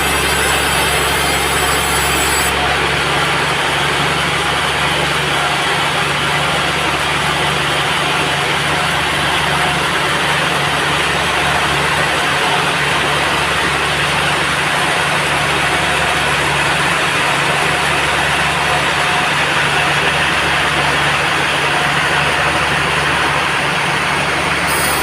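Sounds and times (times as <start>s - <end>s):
blade cutting log hiss: 0.0s - 2.5s, 24.7s - 25.0s
band saw engine hum: 0.0s - 25.0s.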